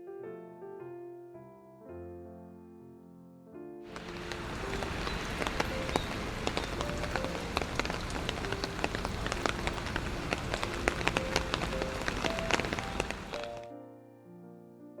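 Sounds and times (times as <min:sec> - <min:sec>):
steady rain: 0:03.9 - 0:13.7.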